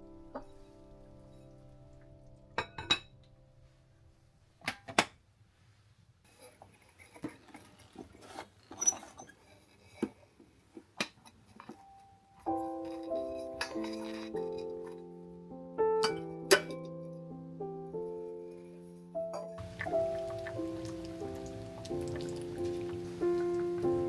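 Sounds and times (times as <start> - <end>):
soft music: 0.0 - 4.4, 11.5 - 24.0
dishes and cutlery clinking: 2.6 - 3.1, 11.0 - 15.0, 16.0 - 17.1.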